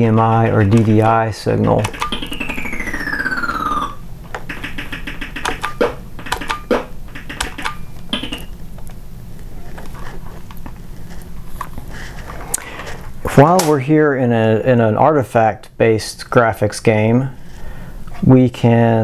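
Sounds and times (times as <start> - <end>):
electronic tone falling in pitch: 1.6 - 8.6.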